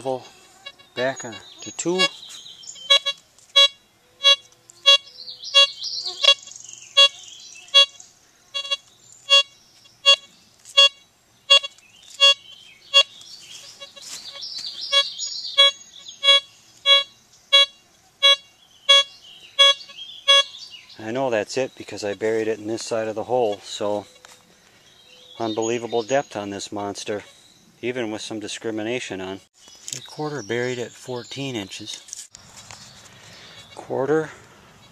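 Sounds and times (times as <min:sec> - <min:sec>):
metal detector short beeps: 0:02.8 - 0:08.0, 0:08.6 - 0:13.1, 0:13.7 - 0:20.6.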